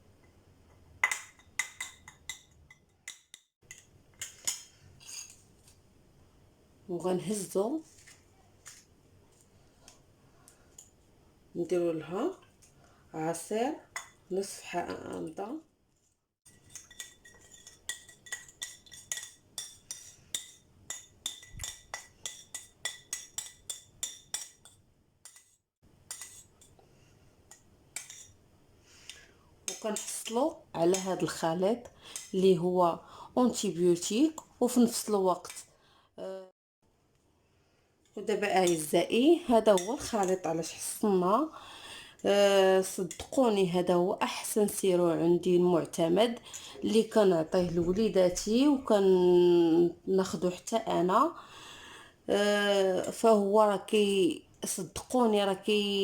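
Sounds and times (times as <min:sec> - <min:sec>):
spoon clinking against dish: 0:01.0 - 0:05.4, 0:16.6 - 0:26.7.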